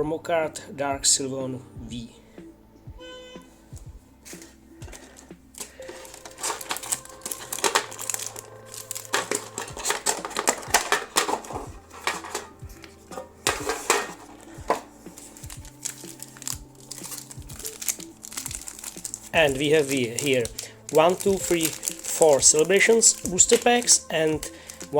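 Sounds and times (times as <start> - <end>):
background music: 0.0 - 24.9
foil packs crinkling: 4.3 - 24.9
metal tin clicking and knocking: 6.3 - 8.0, 9.1 - 14.9.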